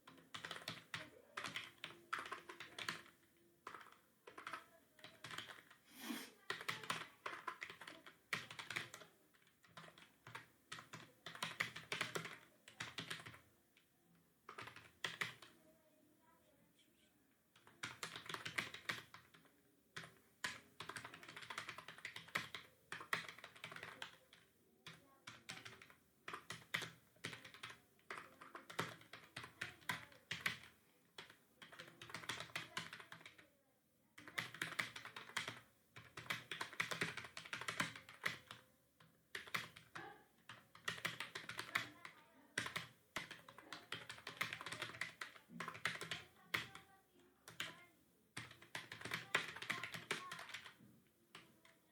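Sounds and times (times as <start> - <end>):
fast typing on keyboard: 0.0 - 5.8, 6.4 - 13.5, 14.5 - 15.6, 17.6 - 33.4, 34.2 - 47.8, 48.4 - 51.9.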